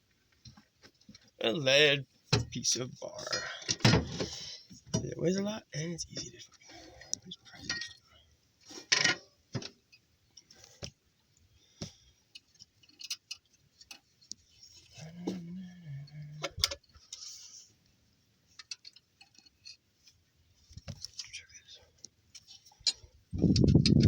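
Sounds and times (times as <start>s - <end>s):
person grunting: 3.3s - 3.7s, 15.0s - 16.5s.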